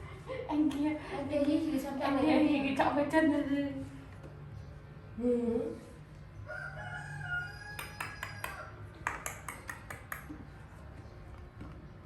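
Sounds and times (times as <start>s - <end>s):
sharp clicks or taps: 7.8s - 10.4s.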